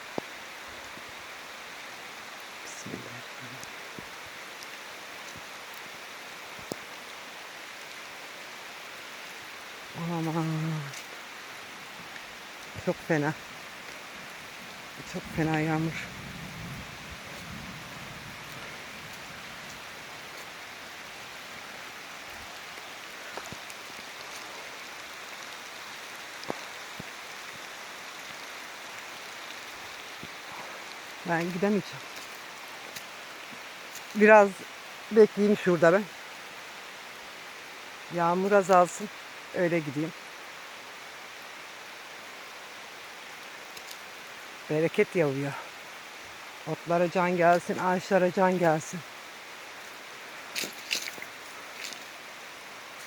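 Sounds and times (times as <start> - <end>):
heavy rain hissing: 0.0 - 53.0.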